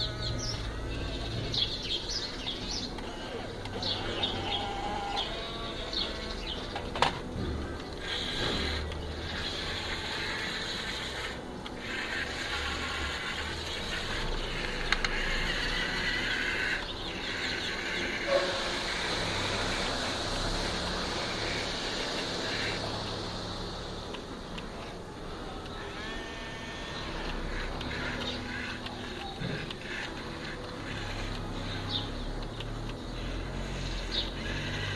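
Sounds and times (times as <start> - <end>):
small electric motors whining: 0.0 - 34.9
short clicks: 14.6 - 15.4.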